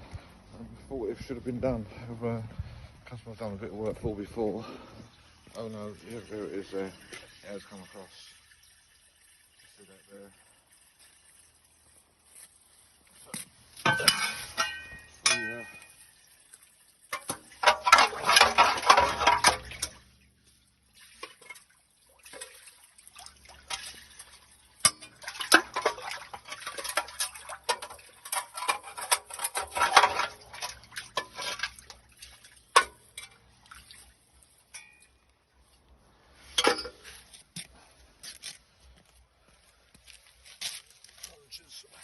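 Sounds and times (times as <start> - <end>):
water splashing in a drain: 3.8 - 37.8
metal clinking and scraping: 11.9 - 16.3, 17.1 - 20.0, 23.6 - 39.3.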